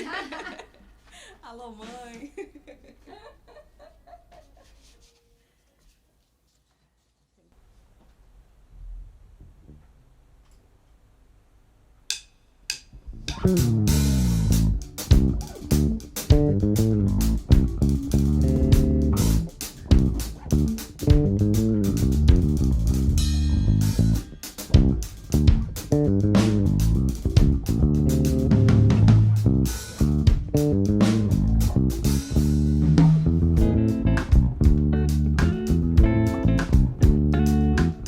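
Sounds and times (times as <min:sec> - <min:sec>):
guitar and bass music: 0:13.1 - 0:38.0.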